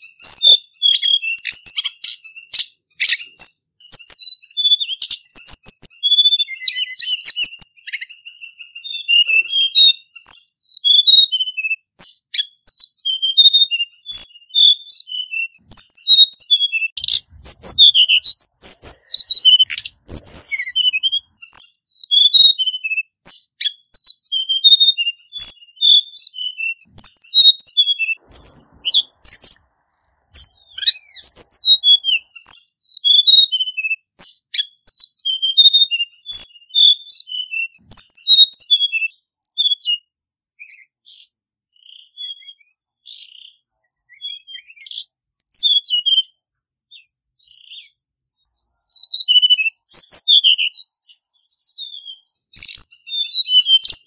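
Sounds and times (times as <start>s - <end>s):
bird singing high notes: 17.0s - 21.4s.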